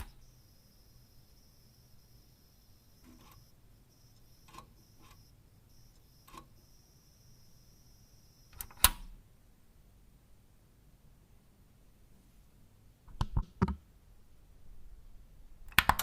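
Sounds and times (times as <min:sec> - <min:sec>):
switches clicking: 0:08.5 - 0:09.1.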